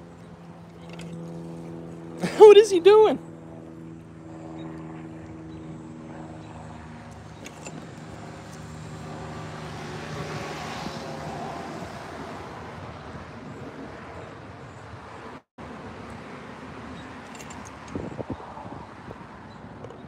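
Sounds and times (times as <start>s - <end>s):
vehicle engine hum: 0.0s - 20.0s
rushing noise of passing vehicle: 7.6s - 19.5s.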